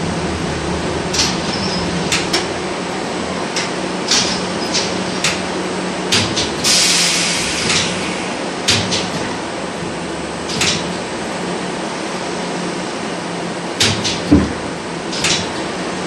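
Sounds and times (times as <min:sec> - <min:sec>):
steady low hum: 0:00.0 - 0:06.7
sharp clicks and knocks: 0:01.1 - 0:02.5, 0:03.5 - 0:05.5, 0:06.1 - 0:06.8, 0:08.6 - 0:09.4, 0:10.5 - 0:11.0, 0:13.8 - 0:15.7
short hiss: 0:06.7 - 0:08.4.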